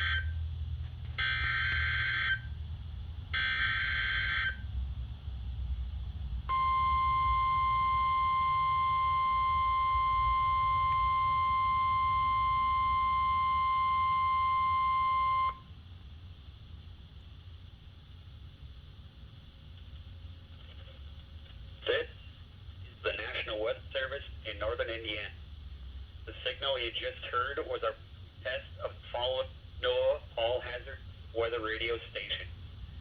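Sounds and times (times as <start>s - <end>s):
warning alarm tone: 0.0s - 0.4s, 1.2s - 2.6s, 3.3s - 4.7s, 6.5s - 15.7s
radio hum and hiss: 6.5s - 33.0s.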